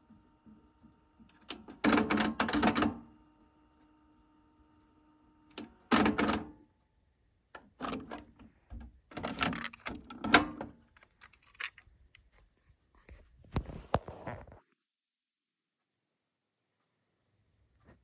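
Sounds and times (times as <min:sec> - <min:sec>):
cassette deck clicks and clunks: 0:07.6 - 0:11.8.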